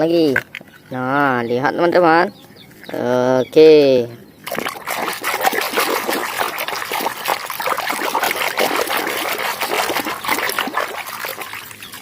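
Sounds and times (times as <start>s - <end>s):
running water splashing: 4.4s - 12.0s.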